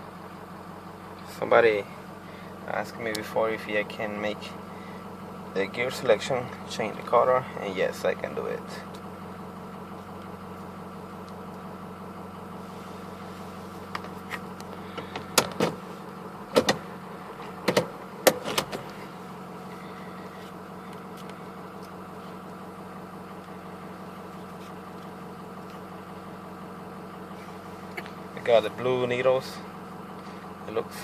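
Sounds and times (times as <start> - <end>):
diesel engine idling: 0.0 - 31.0
sharp clicks and knocks: 16.5 - 16.8, 17.6 - 19.0.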